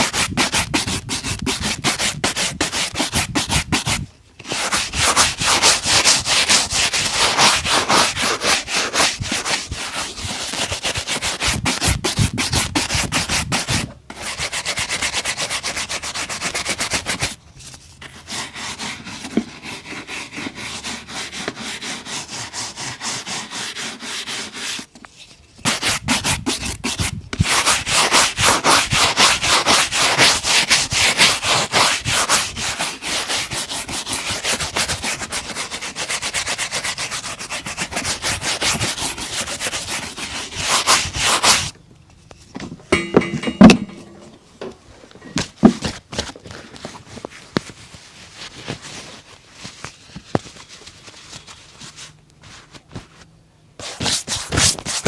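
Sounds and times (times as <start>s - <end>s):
brushing a leather shoe: 0.0s - 17.4s, 18.0s - 24.9s, 25.6s - 41.7s.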